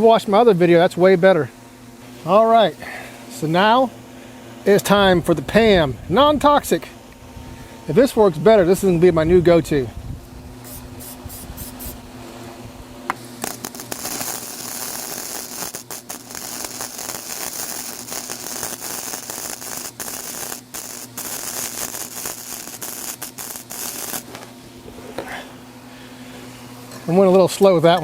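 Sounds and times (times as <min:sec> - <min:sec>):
welder arc crackling on steel: 0:13.1 - 0:25.0.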